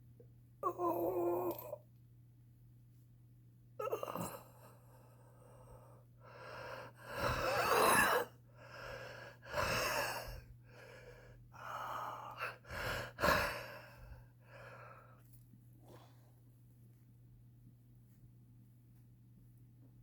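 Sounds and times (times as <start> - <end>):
wheezing laboured breaths: 4.0 - 15.2.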